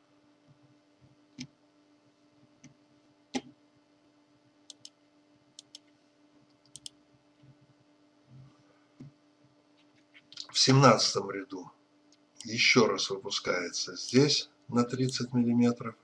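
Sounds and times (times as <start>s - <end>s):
low electrical hum: 0.0s - 16.0s
computer mouse clicks: 2.6s - 3.5s, 4.7s - 5.0s, 5.6s - 5.9s, 6.5s - 7.5s.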